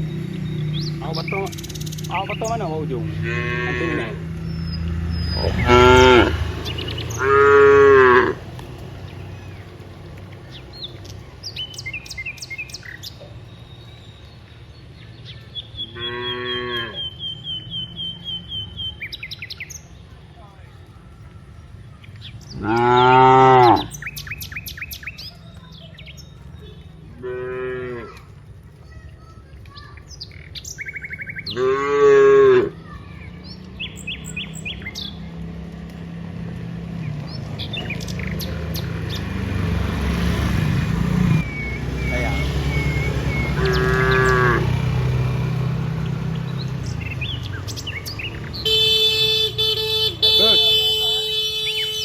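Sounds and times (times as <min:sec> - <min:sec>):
birds chirping: 0:00.0 - 0:52.0
low engine rumble: 0:00.0 - 0:52.0
cow mooing: 0:03.0 - 0:04.3, 0:05.4 - 0:06.4, 0:07.2 - 0:08.4, 0:16.0 - 0:17.0, 0:22.6 - 0:23.9, 0:27.2 - 0:28.2, 0:31.5 - 0:32.8, 0:42.0 - 0:44.8
loud horn-like tone: 0:48.7 - 0:52.0.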